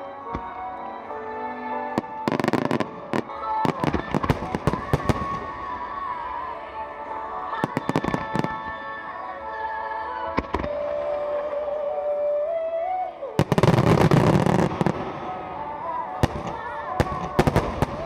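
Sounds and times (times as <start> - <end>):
background music: 0.0 - 18.0
fireworks bursting and crackling: 2.0 - 6.0, 7.6 - 8.9, 13.4 - 18.0.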